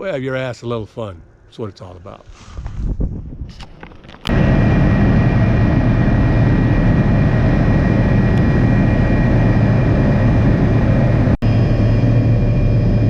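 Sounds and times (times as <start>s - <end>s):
helicopter engine drone: 4.3s - 13.0s.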